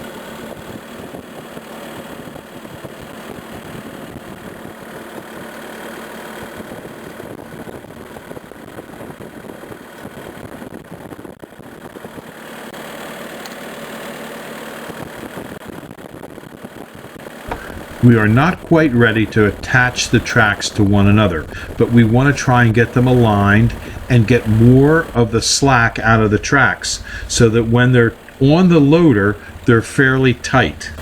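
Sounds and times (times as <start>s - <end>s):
skid steer engine idling: 17.5s - 31.0s.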